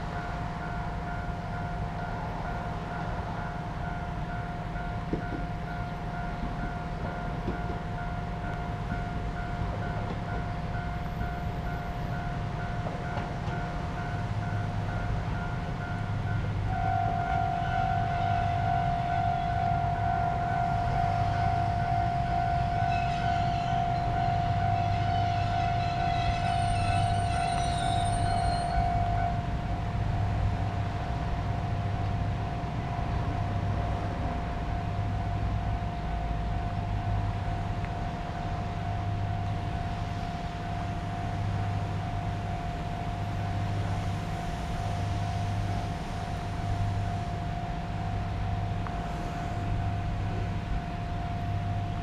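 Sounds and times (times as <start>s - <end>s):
electronic warning bell ringing: 8.0s - 29.4s.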